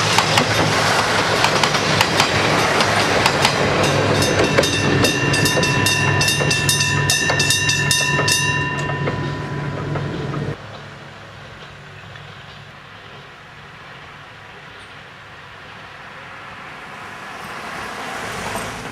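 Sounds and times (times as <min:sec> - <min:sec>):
train wheels clacking: 0:00.0 - 0:13.4
level crossing bell ringing: 0:03.8 - 0:10.6.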